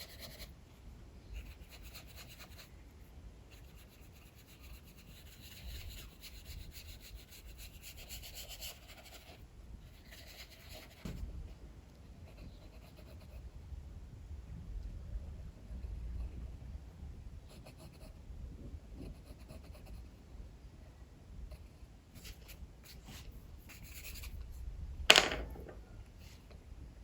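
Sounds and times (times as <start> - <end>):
pencil scratching on paper: 0.0 - 0.5, 1.4 - 2.7, 3.5 - 11.2, 22.2 - 24.4.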